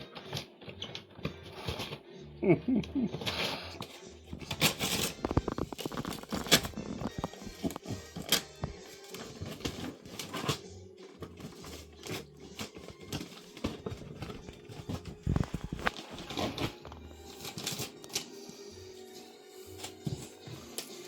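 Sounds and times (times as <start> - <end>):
faint music: 0.0 - 21.0
wrapping paper crinkling and tearing: 3.2 - 18.7.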